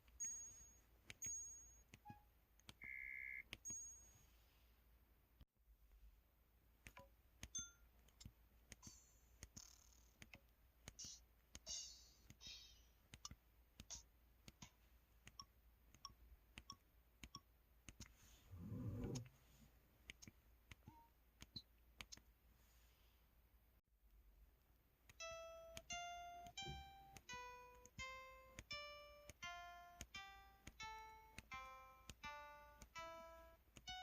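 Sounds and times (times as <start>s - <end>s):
phone keypad clicks and tones: 0.0s - 4.0s, 25.1s - 34.0s.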